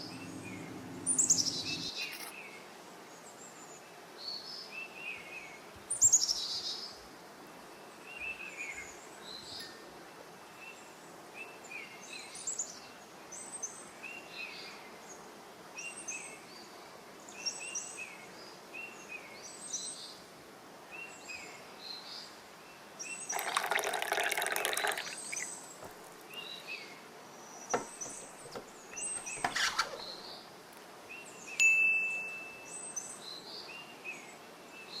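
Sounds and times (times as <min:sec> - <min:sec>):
birds chirping: 0:00.0 - 0:02.4, 0:23.1 - 0:30.5
short ringing clink: 0:31.6 - 0:32.8.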